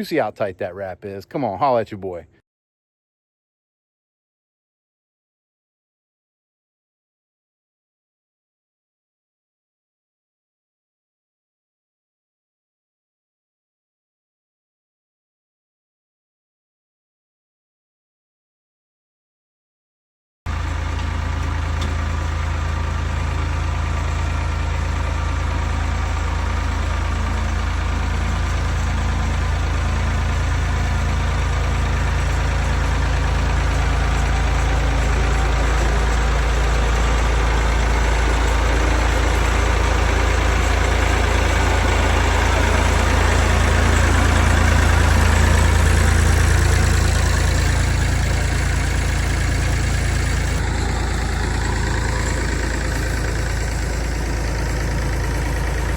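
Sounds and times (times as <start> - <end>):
tractor engine running: 0.0 - 2.2, 20.5 - 55.9.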